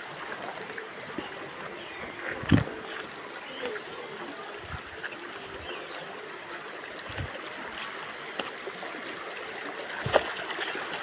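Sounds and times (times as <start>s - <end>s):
mountain stream rushing: 0.0s - 11.0s.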